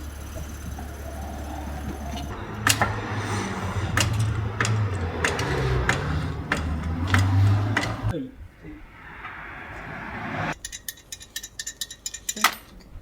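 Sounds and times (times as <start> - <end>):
low mechanical hum: 0.0 - 8.1
sharp metallic clicks: 0.0 - 8.1.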